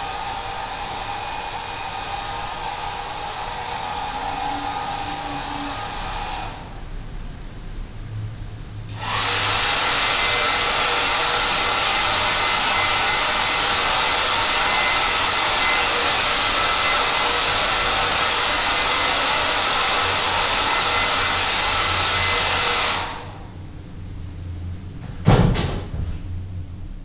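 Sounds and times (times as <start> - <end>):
hair dryer blowing: 0.0 - 6.7, 8.9 - 23.6.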